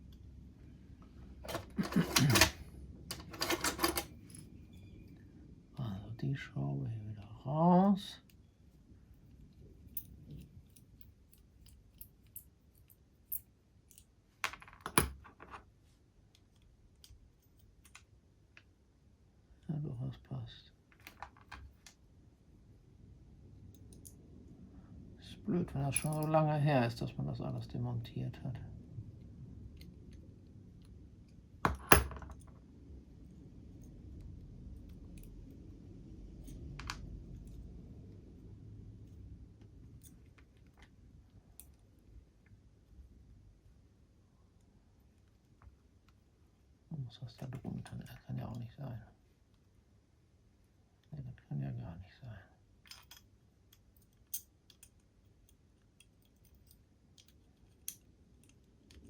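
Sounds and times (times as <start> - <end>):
metal parts clinking: 1.4 - 4.9
small metal parts clinking: 1.4 - 5.0, 52.8 - 59.0.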